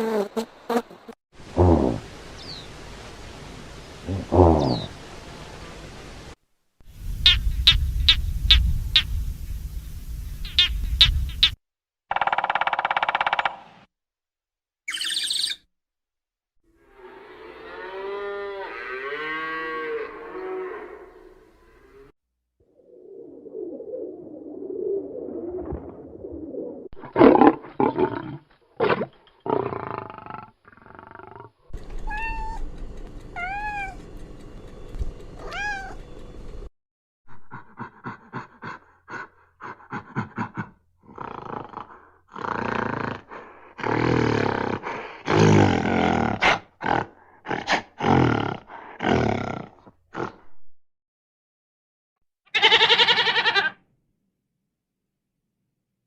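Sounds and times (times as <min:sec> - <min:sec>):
low drawn-out animal call: 0:04.1 - 0:05.0, 0:16.8 - 0:22.1, 0:29.4 - 0:34.0
harsh noisy animal calls: 0:29.6 - 0:32.6, 0:52.5 - 0:53.8
loud animal cries: 0:32.0 - 0:32.6, 0:33.4 - 0:34.0, 0:35.4 - 0:36.0, 0:52.5 - 0:53.8
short arched animal calls: 0:32.0 - 0:32.6.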